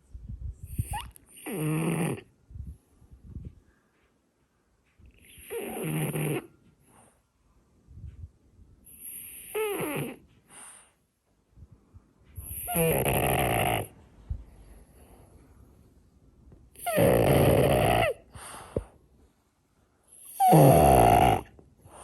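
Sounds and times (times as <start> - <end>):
dog snoring: 0.7 - 2.3, 5.2 - 6.5, 8.8 - 10.8, 12.4 - 14.0, 16.7 - 18.9, 20.1 - 22.0
dog breathing softly: 8.9 - 11.1, 18.2 - 19.0.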